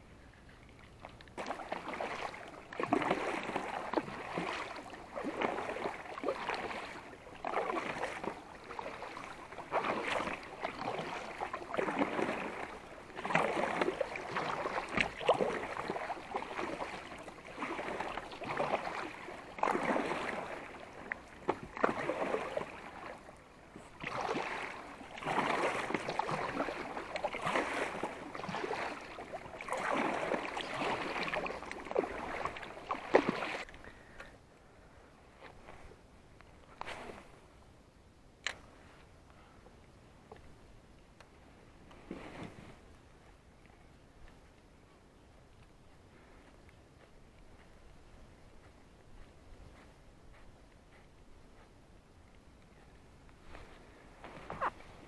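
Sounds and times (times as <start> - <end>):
water splashing around a kayak: 0.0 - 34.2, 51.4 - 55.0.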